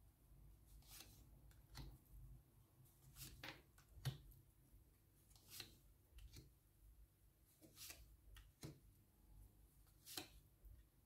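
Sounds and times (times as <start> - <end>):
cards sliding and tapping: 0.8 - 2.0, 3.0 - 4.3, 5.3 - 6.6, 7.5 - 8.9, 9.9 - 10.5.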